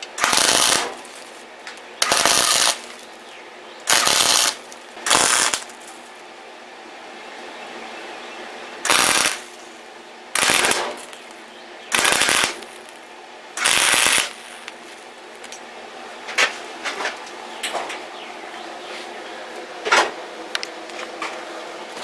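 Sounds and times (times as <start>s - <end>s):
welder crackling bursts: 0.0s - 6.1s, 8.8s - 15.6s.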